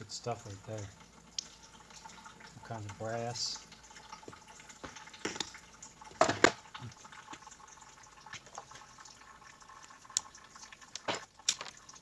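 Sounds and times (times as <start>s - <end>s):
metal parts clicking and knocking: 11.0s - 11.9s.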